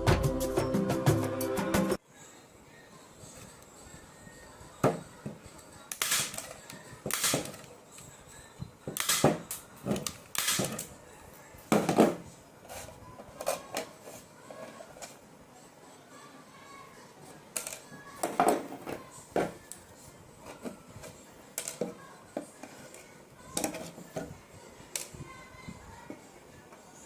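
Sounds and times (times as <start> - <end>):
hard objects clicking and knocking: 23.5 - 24.4.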